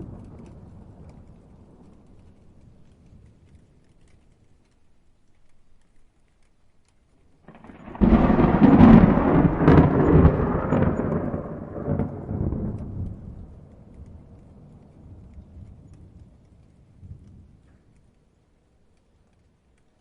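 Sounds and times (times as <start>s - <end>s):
thunder rumbling and clapping: 0.0s - 3.6s, 7.5s - 17.7s.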